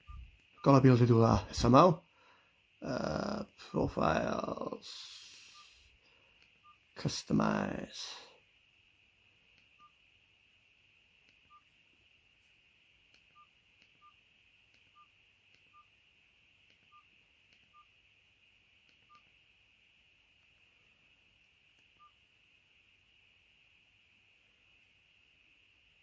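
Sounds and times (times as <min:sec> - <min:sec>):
phone keypad beeps: 0:11.4 - 0:11.7, 0:13.3 - 0:14.2, 0:14.8 - 0:15.9, 0:16.8 - 0:17.1.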